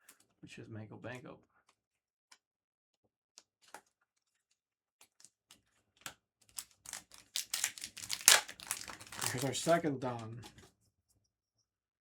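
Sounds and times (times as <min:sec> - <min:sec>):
foil wrapper crinkling: 0:06.5 - 0:09.9
card edges clicking and tapping: 0:06.8 - 0:09.8.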